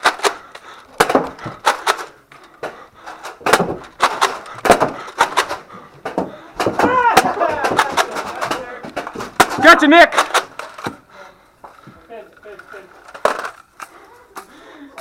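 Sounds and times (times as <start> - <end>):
foam balls knocking on surfaces: 1.0 - 1.9, 3.4 - 11.0
toy blasters popping: 1.0 - 2.1, 3.4 - 11.0.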